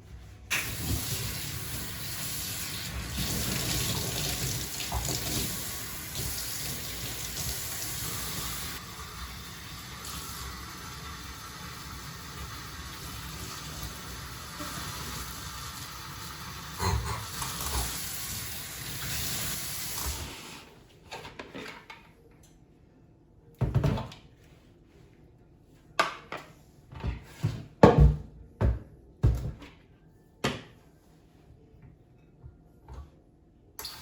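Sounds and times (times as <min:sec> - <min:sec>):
tap water running: 0:00.5 - 0:20.5.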